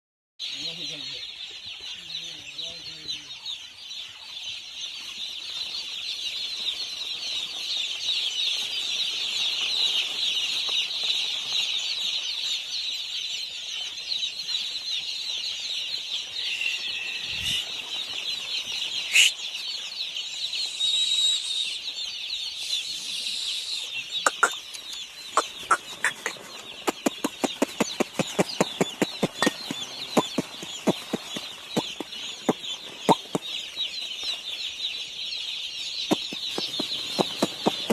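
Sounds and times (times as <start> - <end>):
chicks peeping: 0.4 - 37.9
rapid sharp clicks: 24.3 - 33.5, 36.1 - 37.9.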